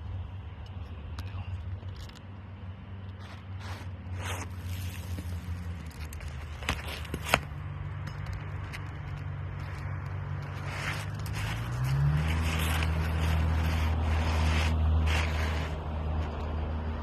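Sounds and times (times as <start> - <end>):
low engine hum: 0.0 - 17.0
shingles scraping and rustling: 3.2 - 16.5.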